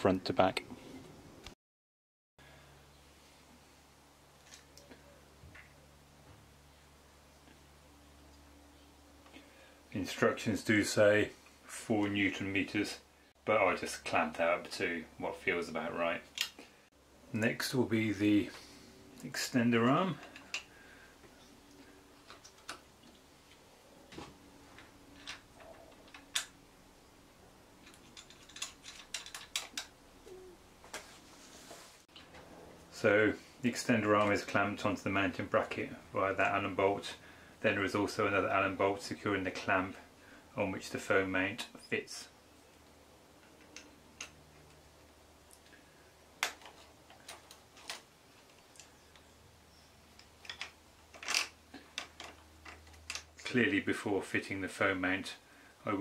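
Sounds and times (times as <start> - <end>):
small metal parts clicking: 25.1 - 26.6, 27.8 - 30.0, 50.1 - 53.5.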